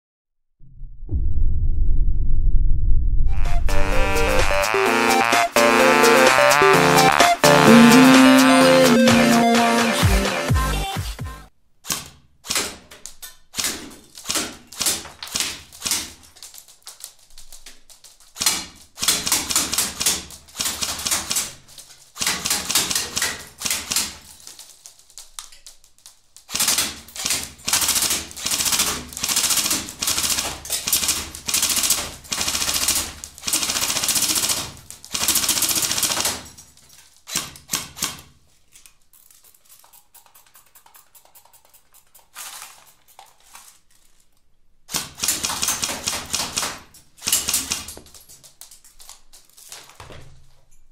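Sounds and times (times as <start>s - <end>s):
airsoft rifle automatic bursts: 26.5s - 36.5s, 44.9s - 47.9s.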